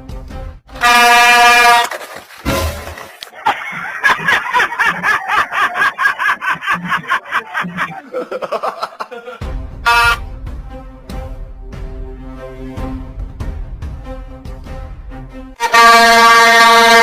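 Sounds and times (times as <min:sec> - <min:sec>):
loud car horn blast: 0:00.8 - 0:01.9, 0:09.8 - 0:10.3, 0:15.6 - 0:17.0.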